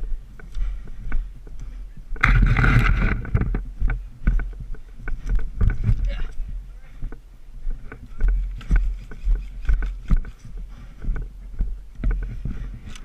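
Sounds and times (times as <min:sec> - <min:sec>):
footsteps dull thuds: 0:00.0 - 0:13.0.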